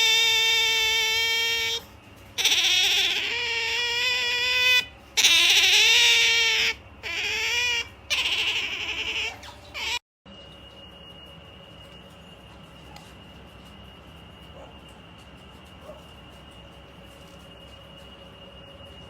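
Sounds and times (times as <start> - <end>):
otter whining squeals: 0.0 - 10.0.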